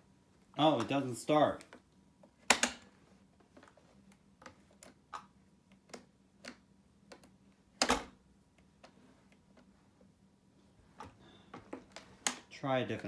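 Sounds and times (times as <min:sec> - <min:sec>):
power switch clicks and knocks: 0:02.5 - 0:02.8.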